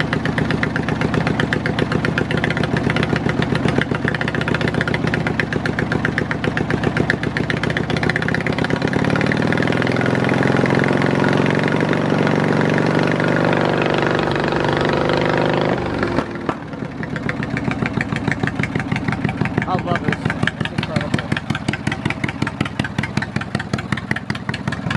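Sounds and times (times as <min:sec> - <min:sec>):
lawn mower engine idling and revving: 0:00.0 - 0:24.9.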